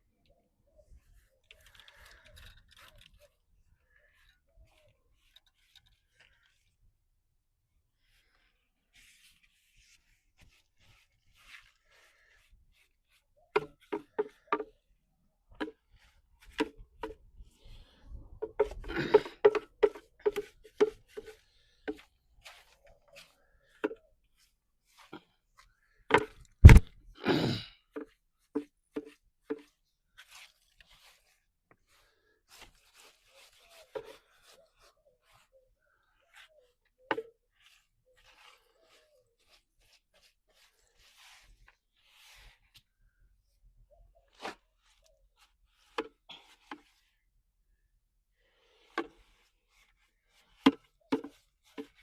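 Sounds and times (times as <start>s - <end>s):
knocks and scrapes on hard surface: 18.4s - 22.0s
loud thump: 26.6s - 26.9s.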